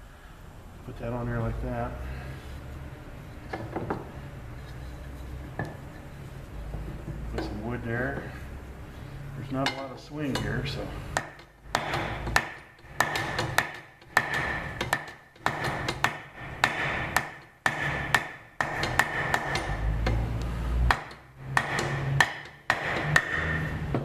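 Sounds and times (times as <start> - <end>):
sharp metallic knocks: 9.6 - 24.0.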